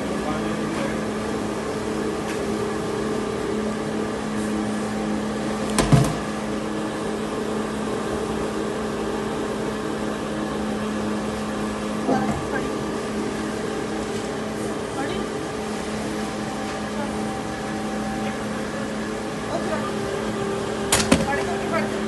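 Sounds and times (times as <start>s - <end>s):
mechanical hum: 0.0s - 22.0s.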